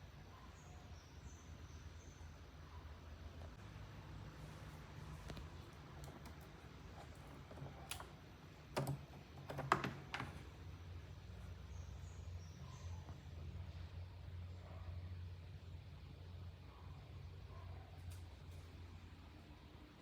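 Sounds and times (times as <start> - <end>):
box fan humming: 3.5 - 16.6
sharp clicks: 5.3 - 10.4.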